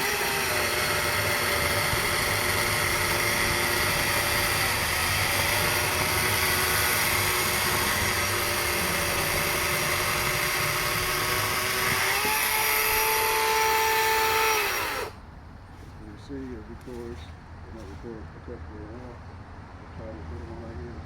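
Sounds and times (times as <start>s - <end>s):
battery chainsaw cutting log: 0.0s - 15.2s.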